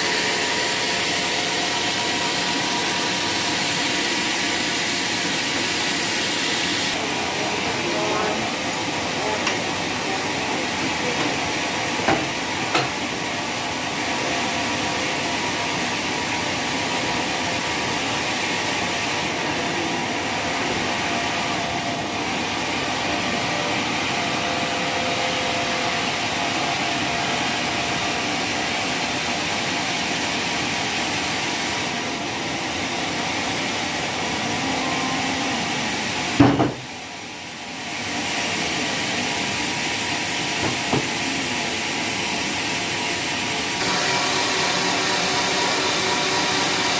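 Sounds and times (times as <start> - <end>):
sawmill saw cutting wood: 0.0 - 8.6, 40.3 - 46.9.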